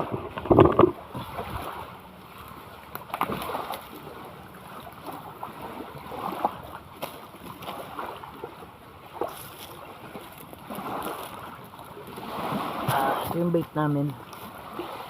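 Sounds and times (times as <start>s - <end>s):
wind on microphone: 0.0s - 1.8s
sea water lapping and splashing: 0.0s - 15.0s.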